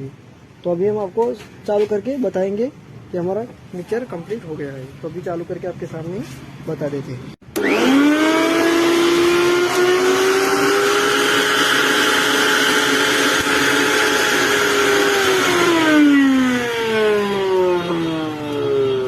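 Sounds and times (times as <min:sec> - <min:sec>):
mixer grinder motor whine: 0:07.4 - 0:19.0.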